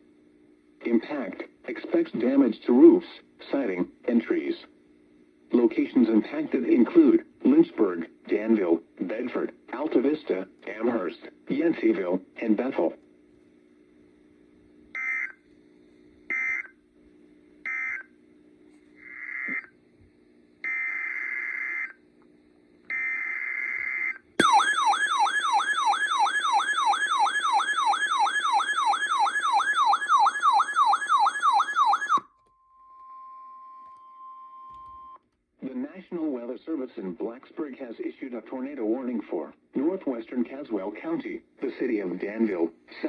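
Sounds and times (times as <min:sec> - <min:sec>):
faint low hum: 0:00.0 - 0:23.4
warbling attention tone: 0:24.4 - 0:34.7.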